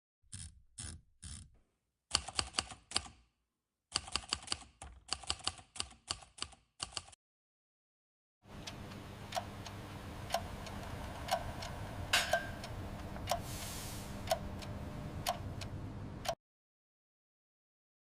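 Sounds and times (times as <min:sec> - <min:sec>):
keyboard typing clicks: 0:04.0 - 0:07.2.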